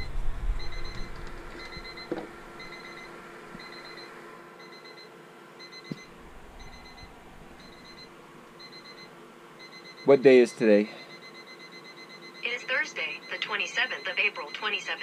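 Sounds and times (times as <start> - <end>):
electronic alarm beeping: 0.6 - 10.2, 11.0 - 15.0.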